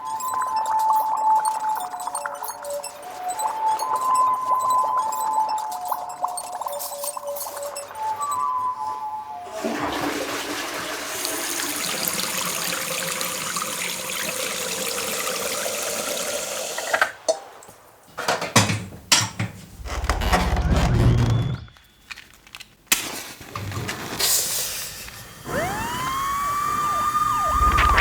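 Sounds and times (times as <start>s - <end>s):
rushing flushing water: 9.5s - 17.3s
brief pitched tone: 26.8s - 28.0s.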